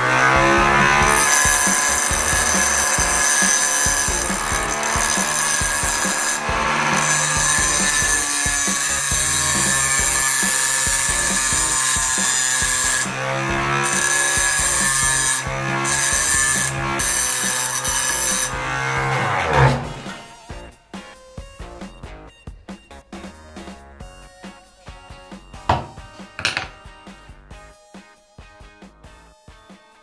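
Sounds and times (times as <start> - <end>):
table saw cutting wood: 0.0 - 20.4, 25.7 - 26.8.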